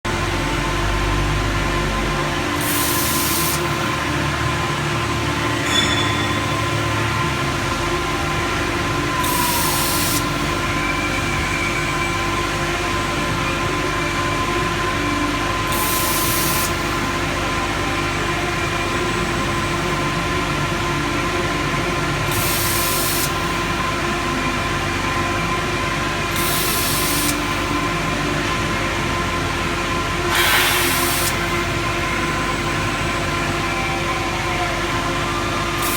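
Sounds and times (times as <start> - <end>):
machine hum with held tones: 0.1 - 35.9
short bursts of hiss: 30.3 - 31.5.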